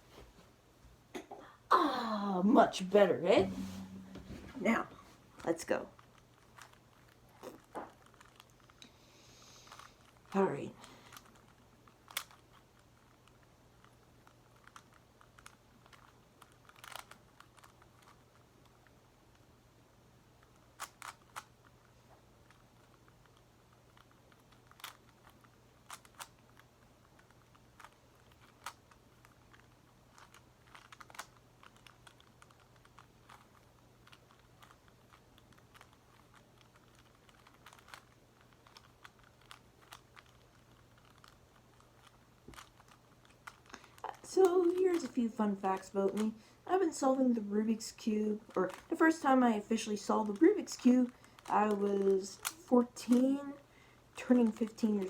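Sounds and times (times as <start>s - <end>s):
steady low hum: 0.0s - 12.0s
plastic puzzle faces clicking: 11.0s - 19.0s, 20.4s - 21.8s, 22.5s - 47.3s, 48.4s - 55.0s.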